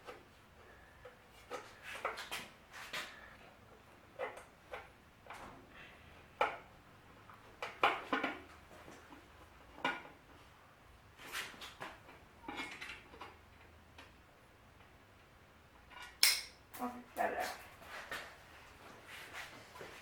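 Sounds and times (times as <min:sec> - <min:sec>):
hand tool clinking on metal: 0:16.0 - 0:16.6.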